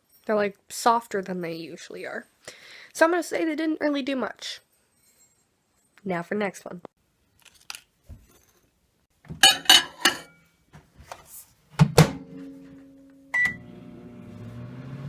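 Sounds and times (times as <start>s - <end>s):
microwave oven humming: 12.8s - 15.0s.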